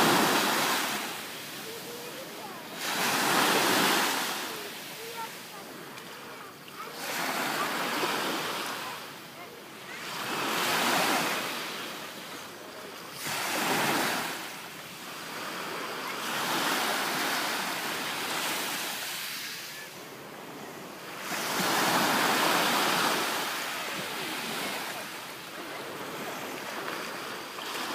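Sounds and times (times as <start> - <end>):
sea waves breaking on shore: 0.0 - 27.9.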